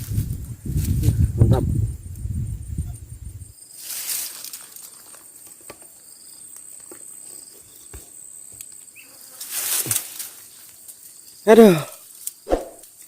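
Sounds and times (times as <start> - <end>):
high-pitched insect trill: 0.7 - 13.0
brief rustle: 3.8 - 5.2.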